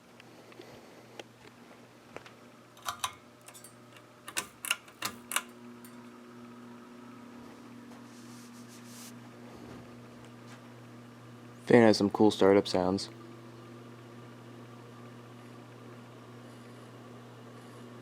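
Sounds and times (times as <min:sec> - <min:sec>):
fan motor humming: 0:00.0 - 0:18.0
pull-chain switch clicking: 0:02.8 - 0:05.5.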